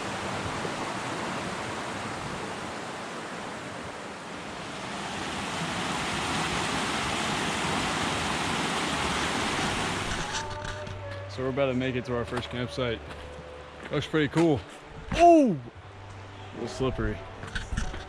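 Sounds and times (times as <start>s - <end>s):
mountain stream rushing: 0.0s - 11.0s.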